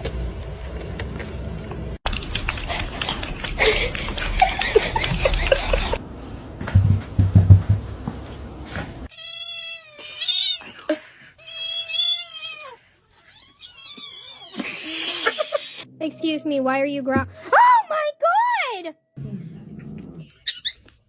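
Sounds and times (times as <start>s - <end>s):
knocks and low thumps: 6.6s - 8.3s.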